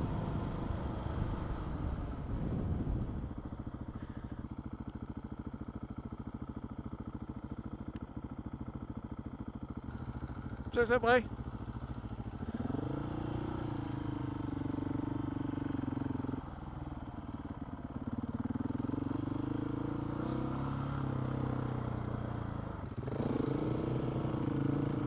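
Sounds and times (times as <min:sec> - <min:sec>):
motorcycle engine revving: 0:09.7 - 0:10.7, 0:11.3 - 0:16.5, 0:18.0 - 0:25.0.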